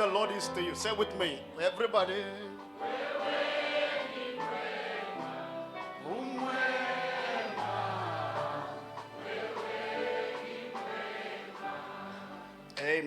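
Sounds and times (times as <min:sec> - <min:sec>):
instrumental backing: 0:00.0 - 0:13.0
group singing gospel song: 0:02.5 - 0:12.7.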